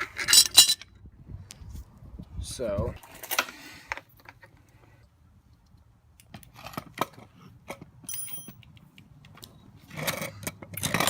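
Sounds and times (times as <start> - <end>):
metal tools clicking and clinking: 8.0 - 8.8
ringing metal clink: 8.1 - 8.6.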